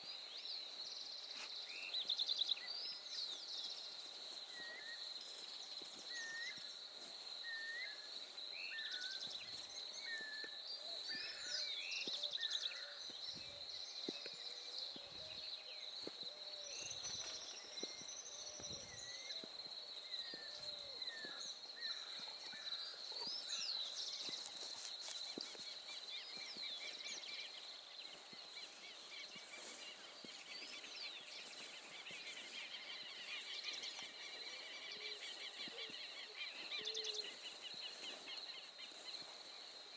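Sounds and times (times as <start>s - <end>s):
birds chirping and whistling: 10.0s - 19.5s, 25.3s - 39.0s.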